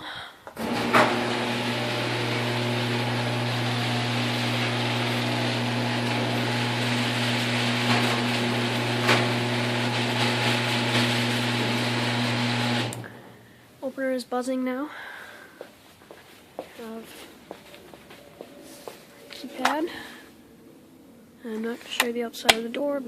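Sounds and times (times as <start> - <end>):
door rolling on metal rollers: 0.6 - 13.2
screw rail whirring: 0.6 - 13.2
garage door opener motor hum: 0.6 - 13.5.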